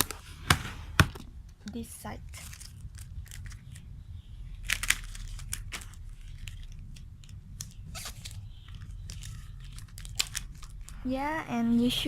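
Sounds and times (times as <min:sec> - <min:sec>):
paper crinkling: 0:02.3 - 0:03.8, 0:04.6 - 0:11.1.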